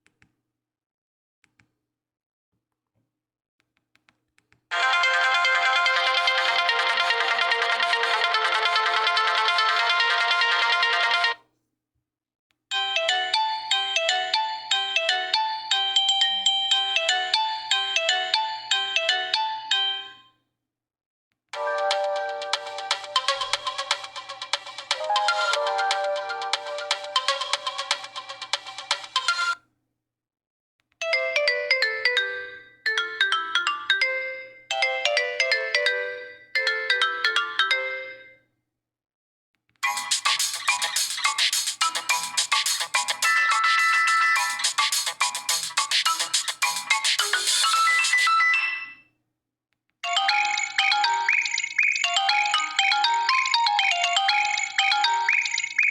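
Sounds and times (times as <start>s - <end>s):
phone ringtone: 4.7s - 11.4s, 12.7s - 20.2s, 21.6s - 29.6s, 31.0s - 38.4s, 39.8s - 49.0s, 50.0s - 55.9s
dense electronic ringtone melody: 21.6s - 28.5s, 39.8s - 49.0s, 50.0s - 55.9s
ringtone of quick short notes: 39.8s - 49.0s.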